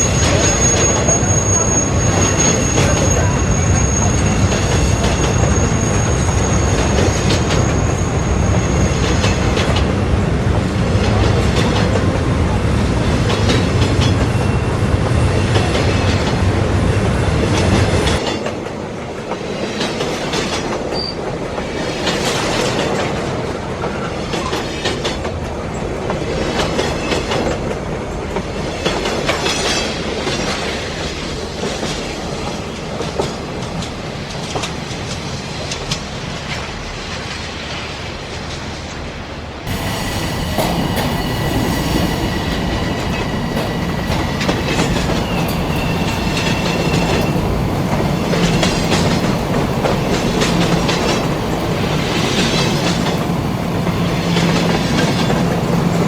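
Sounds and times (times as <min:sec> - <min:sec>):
high wheel squeal: 0:00.0 - 0:09.4, 0:39.7 - 0:56.0
train rumbling on rails: 0:00.0 - 0:56.0
clickety-clack of wheels: 0:17.4 - 0:37.8, 0:39.7 - 0:56.0.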